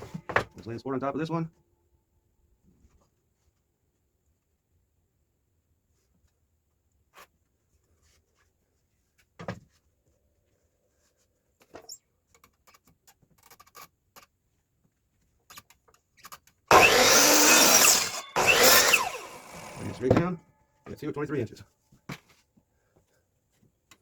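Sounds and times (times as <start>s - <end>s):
electric saw cutting wood: 16.7s - 20.2s.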